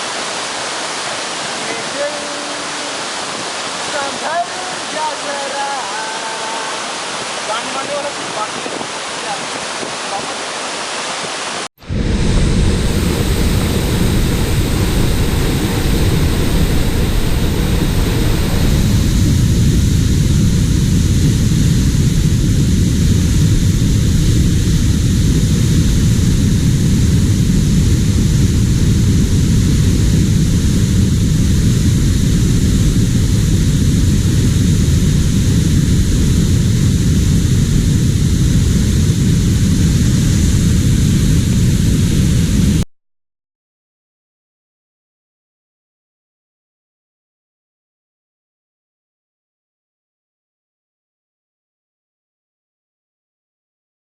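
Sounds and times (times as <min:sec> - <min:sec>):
waterfall rushing: 0:00.0 - 0:19.6.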